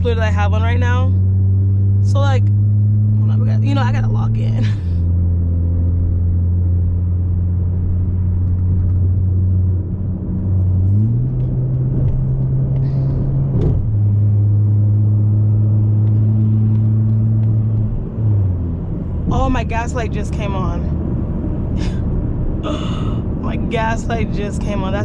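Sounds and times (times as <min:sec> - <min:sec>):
car engine deep exhaust drone: 0:00.0 - 0:25.0.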